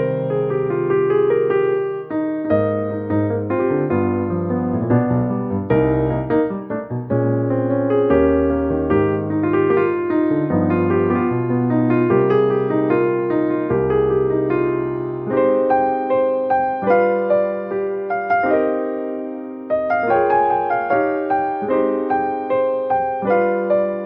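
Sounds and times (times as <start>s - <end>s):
piano melody: 0.0s - 24.0s
bass line: 2.5s - 15.6s.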